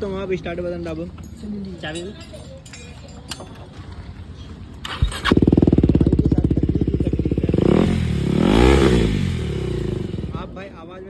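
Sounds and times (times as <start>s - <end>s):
motorcycle engine rev: 4.8s - 10.8s
motorcycle engine starting and idling: 4.8s - 11.0s.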